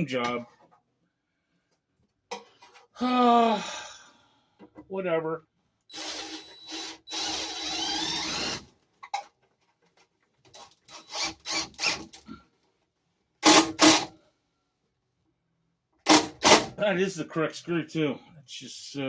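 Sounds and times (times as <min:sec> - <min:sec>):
power drill driving a screw: 0:05.9 - 0:08.7, 0:10.5 - 0:12.2, 0:13.4 - 0:14.1, 0:16.0 - 0:16.7.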